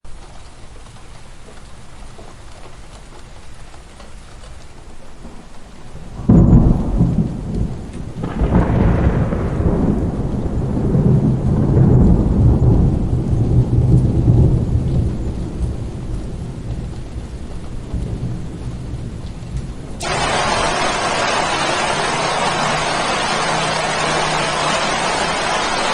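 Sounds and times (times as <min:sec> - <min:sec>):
light rain: 0:00.0 - 0:25.9
thunderclap: 0:00.9 - 0:25.9
low rumble of thunder: 0:01.2 - 0:25.9.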